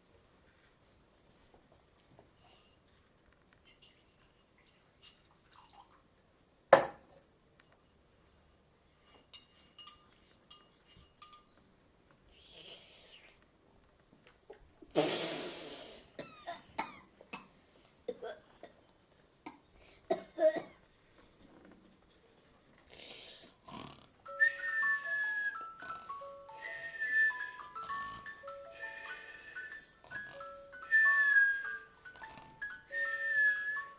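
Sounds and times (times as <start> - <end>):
soft hiss: 0.0 - 23.6
light clinks: 3.5 - 5.4, 7.6 - 11.6.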